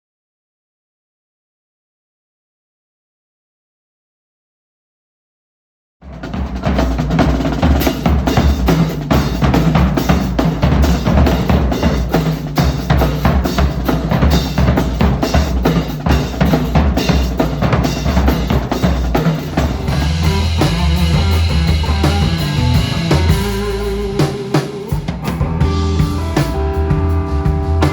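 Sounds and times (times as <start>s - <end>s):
drums playing busy rhythm: 6.0s - 27.9s.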